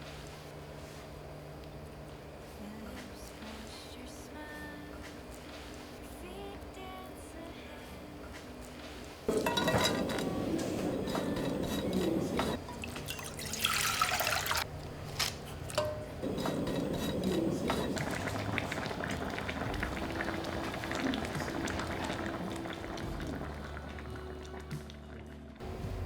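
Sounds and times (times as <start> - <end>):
liquid being poured: 9.3 - 14.7.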